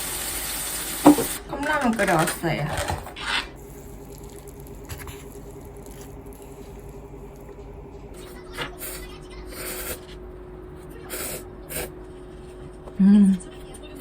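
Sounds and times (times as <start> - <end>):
faint hum: 0.0 - 14.0
wet slurps and mouth sounds: 8.2 - 10.2, 11.0 - 11.9.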